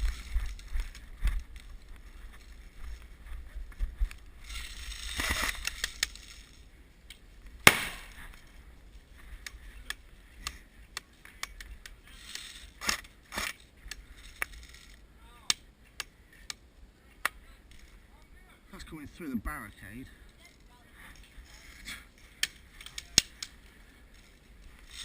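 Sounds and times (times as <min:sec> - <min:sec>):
rustling: 0:00.0 - 0:15.1, 0:20.1 - 0:25.0
sharp crack: 0:07.1 - 0:08.3, 0:09.8 - 0:16.6, 0:21.9 - 0:23.6.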